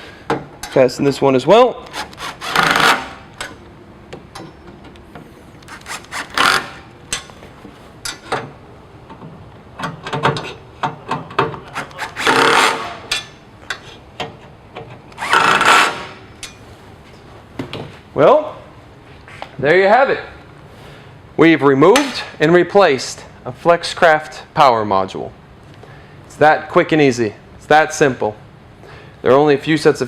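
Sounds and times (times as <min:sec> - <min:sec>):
tool fastening screws on metal: 0:09.8 - 0:14.3.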